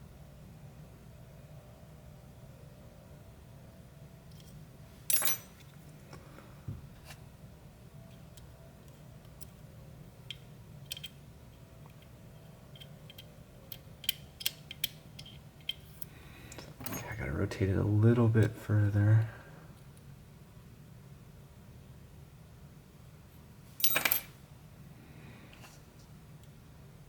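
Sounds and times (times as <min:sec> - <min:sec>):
metallic clicks and scrapes in lock: 0:10.3 - 0:11.2, 0:11.9 - 0:17.1.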